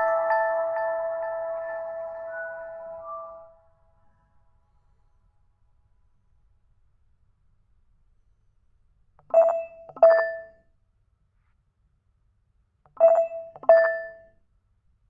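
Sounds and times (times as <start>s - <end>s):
phone ringtone chiming notes: 0.0s - 3.6s.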